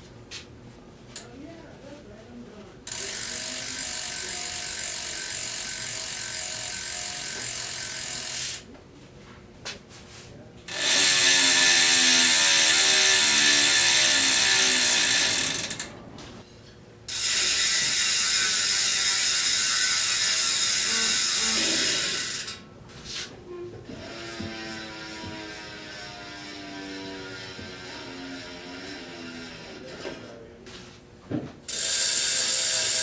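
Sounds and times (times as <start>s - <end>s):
bicycle hub ratchet clicking: 2.9s - 8.6s, 10.7s - 15.9s, 17.1s - 22.6s, 24.0s - 29.9s, 31.7s - 33.0s.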